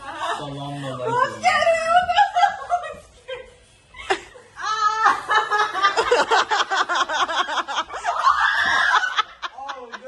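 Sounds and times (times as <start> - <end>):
people laughing loudly: 4.1 - 10.0.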